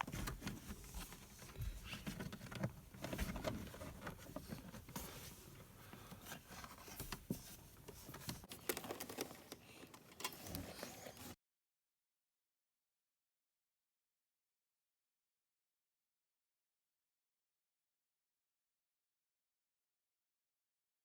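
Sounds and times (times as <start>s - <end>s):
wiring clicking and rustling: 0.0s - 5.2s, 6.1s - 10.7s.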